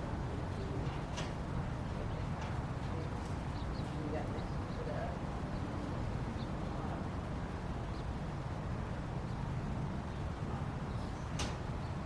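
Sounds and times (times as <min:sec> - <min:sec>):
low background rumble: 0:00.0 - 0:12.0.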